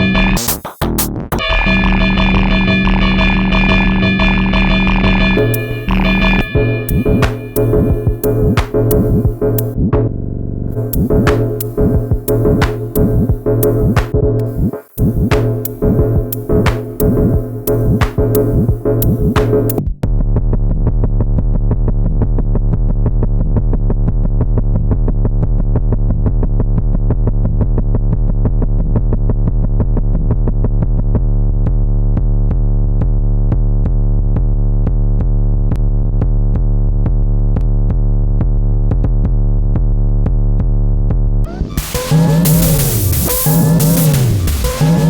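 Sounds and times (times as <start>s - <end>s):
electronic drum loop: 0.0s - 10.1s, 10.8s - 19.8s, 41.5s - 45.0s
deep steady bass: 0.0s - 45.0s.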